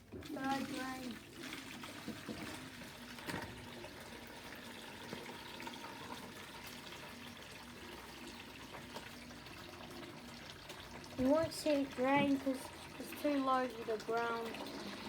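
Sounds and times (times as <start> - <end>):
water draining from washing machine: 0.0 - 15.0.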